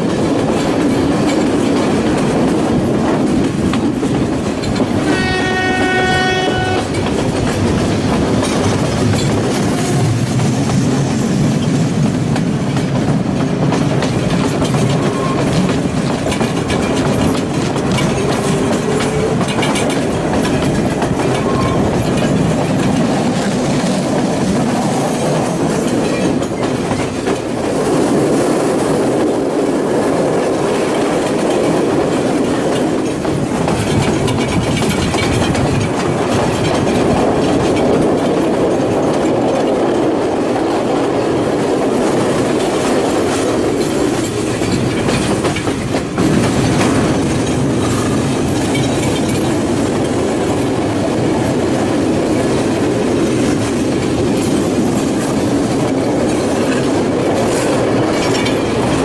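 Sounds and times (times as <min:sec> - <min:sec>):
train wheels rumbling on rails: 0:00.0 - 0:59.0
train horn: 0:05.0 - 0:07.0.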